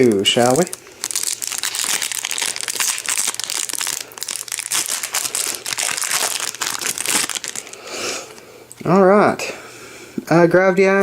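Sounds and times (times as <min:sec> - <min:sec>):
foil wrapper crinkling: 0:00.0 - 0:08.4.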